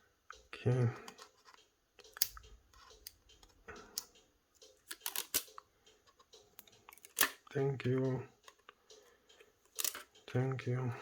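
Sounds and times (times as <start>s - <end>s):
tool clicking on phone parts: 1.0s - 7.5s, 8.4s - 10.2s.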